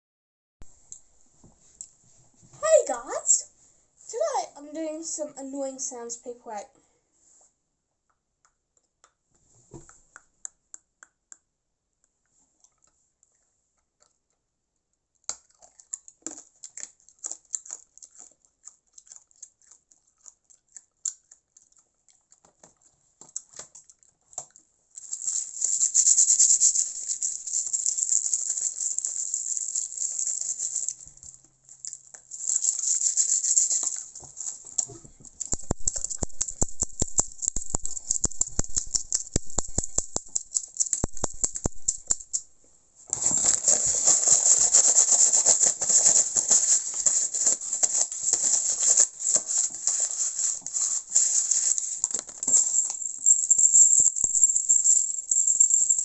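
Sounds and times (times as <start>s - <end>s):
clicks and scratches by hand: 32.0s - 42.5s, 43.1s - 54.7s
fast even clicks: 35.4s - 42.4s.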